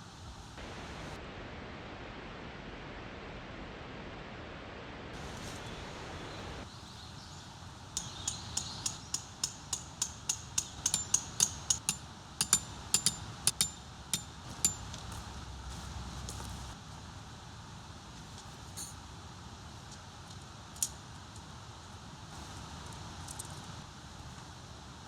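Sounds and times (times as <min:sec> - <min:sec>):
hammer striking metal peg: 0:08.0 - 0:15.3.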